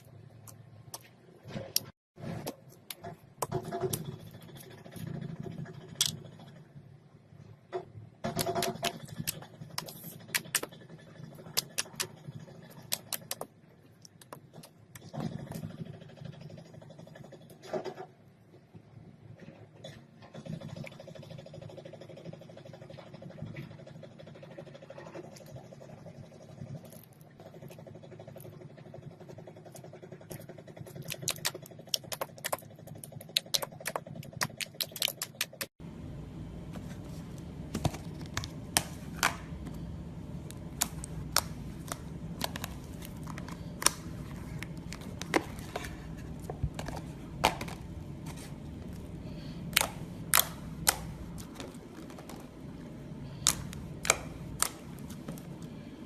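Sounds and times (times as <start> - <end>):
low hum: 26.1 - 56.0.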